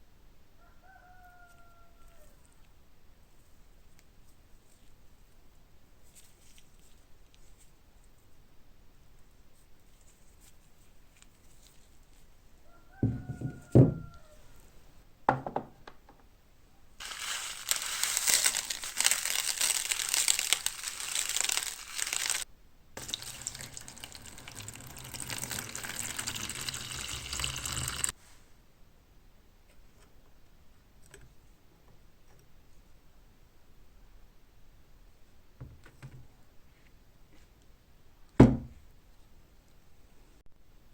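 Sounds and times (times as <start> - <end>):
water hissing in electrolysis bath: 23.0 - 28.1.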